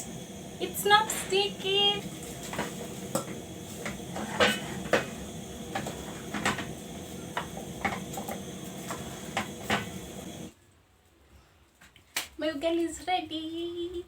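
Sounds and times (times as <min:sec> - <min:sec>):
kitchen hum: 0:00.0 - 0:10.5.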